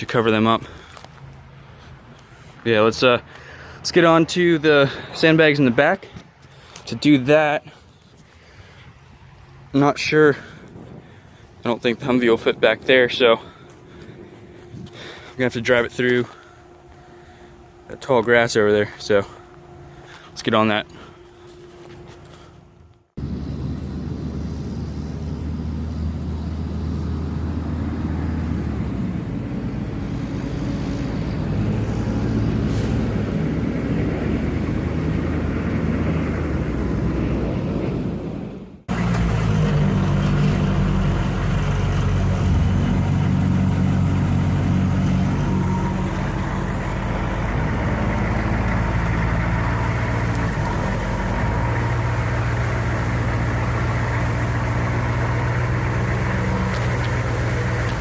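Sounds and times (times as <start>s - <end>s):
diesel truck engine revving: 23.2s - 58.0s.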